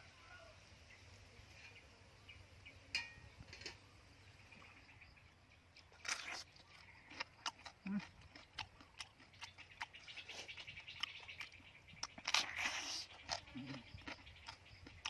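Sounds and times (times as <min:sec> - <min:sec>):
faint outdoor background noise: 0:00.0 - 0:15.0.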